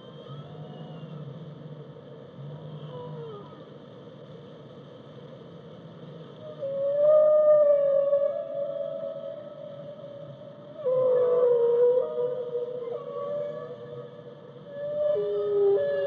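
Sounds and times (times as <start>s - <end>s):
whale moans and calls: 0.0s - 1.6s, 2.4s - 3.9s, 6.4s - 16.0s.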